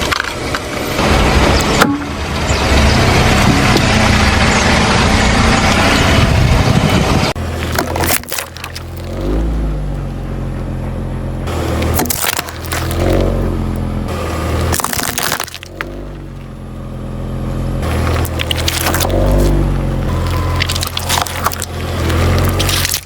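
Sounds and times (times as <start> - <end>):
objects crushed under tyre: 7.4 - 9.6, 11.8 - 16.5, 17.8 - 23.0.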